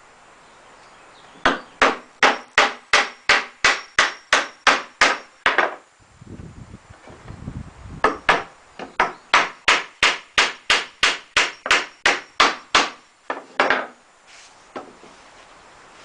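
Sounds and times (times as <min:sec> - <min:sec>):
hammer driving nails into wood: 0:01.4 - 0:05.8, 0:08.0 - 0:14.0.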